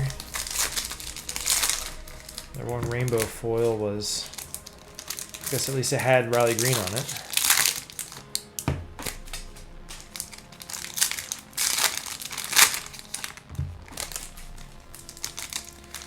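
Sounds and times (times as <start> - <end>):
card packaging crinkling and tearing: 0.0 - 16.0
dull thumps: 8.6 - 10.2, 13.4 - 15.4.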